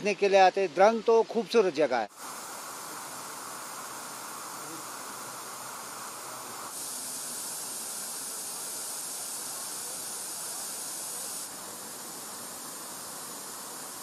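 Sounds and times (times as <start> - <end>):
steady outdoor hiss: 0.0 - 14.0.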